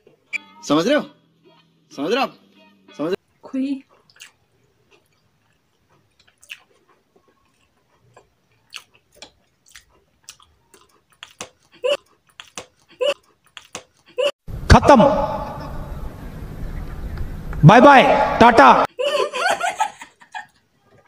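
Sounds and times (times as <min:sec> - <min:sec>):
chewing and mouth smacks: 0:03.8 - 0:14.1.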